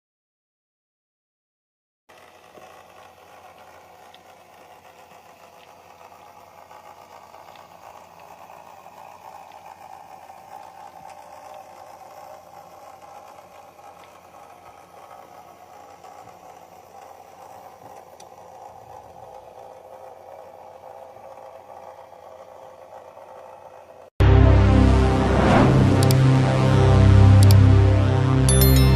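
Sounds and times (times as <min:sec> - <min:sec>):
model train motor hum: 0:02.1 - 0:24.1
rattling train wheels: 0:02.1 - 0:24.1
loud music: 0:24.2 - 0:28.9.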